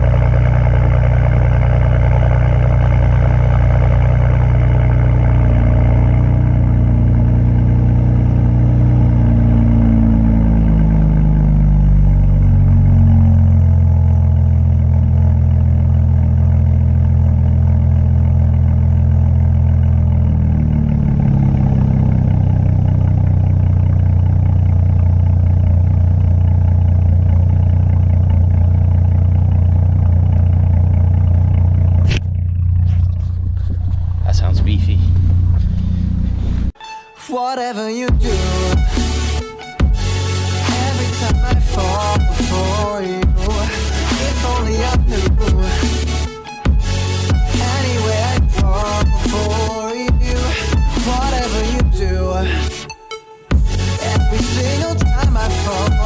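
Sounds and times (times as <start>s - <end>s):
car engine through exhaust: 0.0s - 36.8s, 38.1s - 56.0s.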